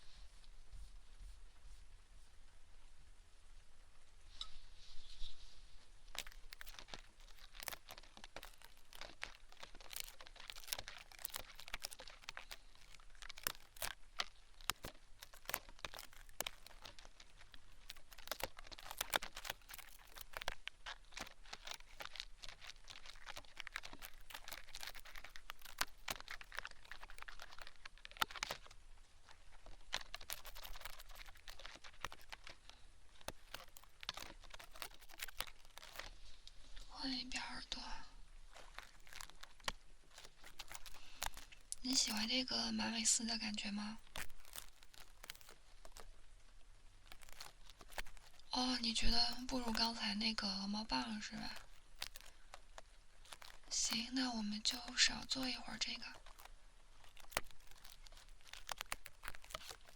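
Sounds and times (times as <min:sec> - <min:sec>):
hair brushing on microphone: 0:00.0 - 0:02.6.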